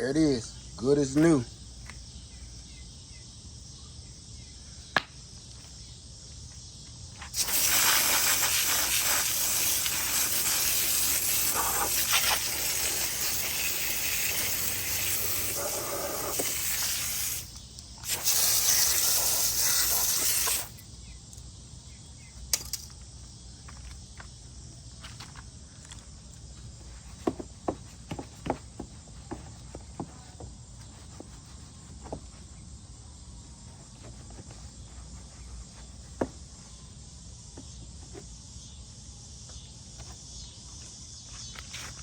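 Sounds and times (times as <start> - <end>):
hiss of spraying air: 7.3 - 20.8.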